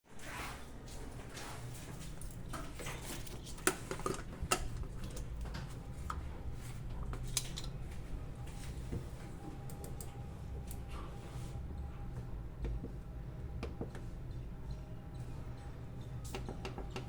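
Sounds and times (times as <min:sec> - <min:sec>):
steady low hum: 0:00.7 - 0:17.0.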